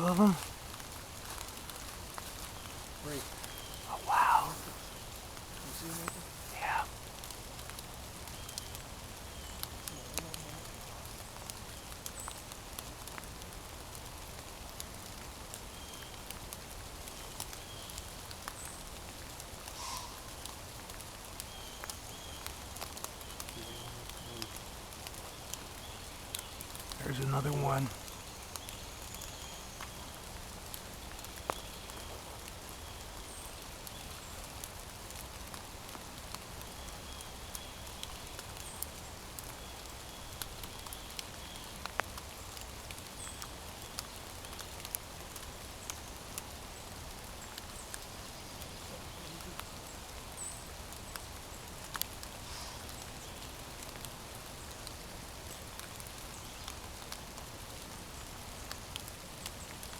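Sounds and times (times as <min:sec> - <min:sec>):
steady hiss: 0:00.0 - 0:08.2, 0:18.9 - 0:22.2, 0:46.4 - 0:54.3
light ticks: 0:33.3 - 0:46.5, 0:50.4 - 0:55.0.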